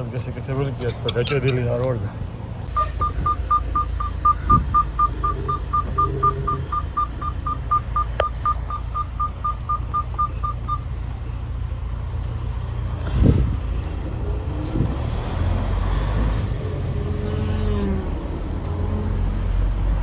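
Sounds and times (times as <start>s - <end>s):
rapid electronic warning beeps: 2.7s - 10.9s
diesel engine idling: 2.7s - 20.0s.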